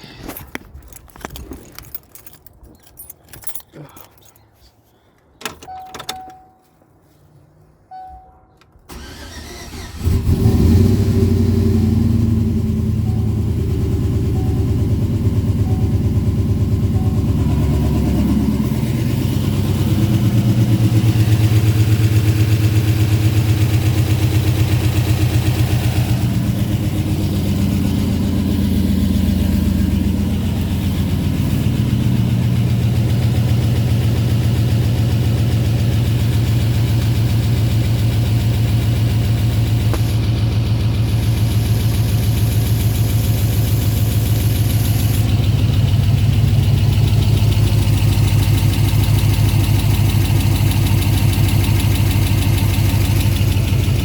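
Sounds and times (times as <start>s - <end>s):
engine lifter noise: 8.6s - 54.0s
engine running: 8.9s - 54.0s.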